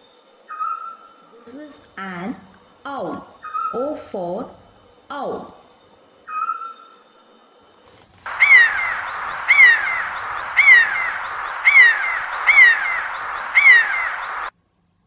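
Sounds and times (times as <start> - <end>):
owl calling: 8.3 - 14.5
steady hiss: 8.3 - 14.5.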